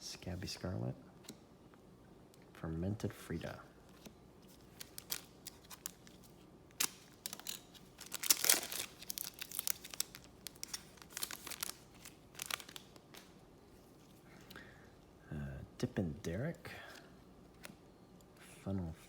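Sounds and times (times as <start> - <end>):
trading cards rustling: 3.9 - 14.5.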